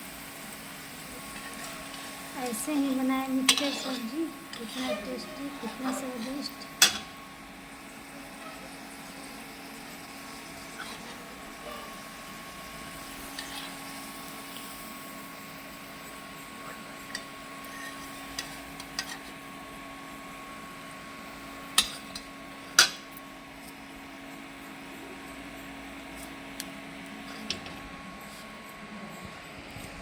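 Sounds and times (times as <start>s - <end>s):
metal utensils and dishes clinking: 1.3s - 7.2s, 16.7s - 19.4s, 21.8s - 23.2s, 27.2s - 28.4s.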